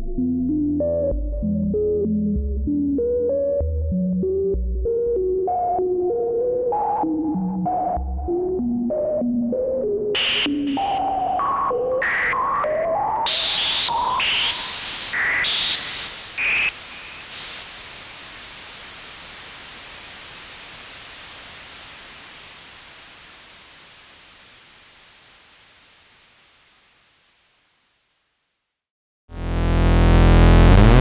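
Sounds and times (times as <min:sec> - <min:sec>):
synthesizer noise hiss: 0:13.3 - 0:27.5, 0:29.4 - 0:31.0
synthesizer blips: 0:29.4 - 0:31.0.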